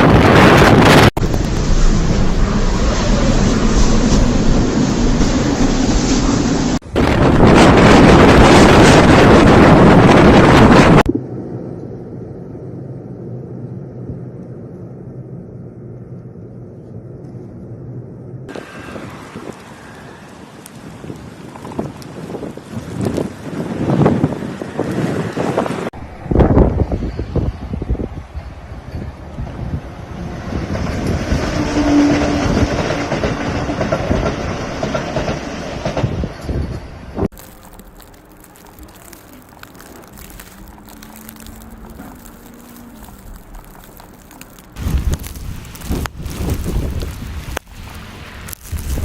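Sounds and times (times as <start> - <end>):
wind buffeting microphone: 0.0 - 11.2, 18.5 - 37.3, 40.1 - 49.0
low steady rumble: 11.0 - 18.5
train horn: 31.3 - 33.2.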